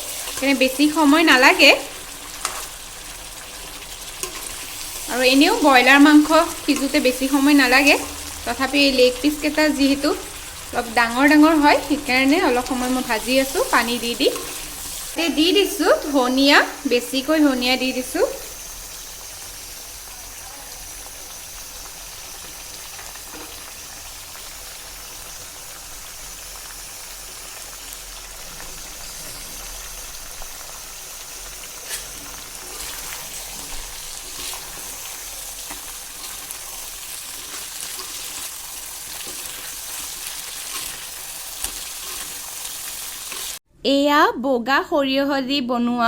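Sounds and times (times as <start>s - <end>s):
chicken sizzling in a pan: 0.0s - 43.6s.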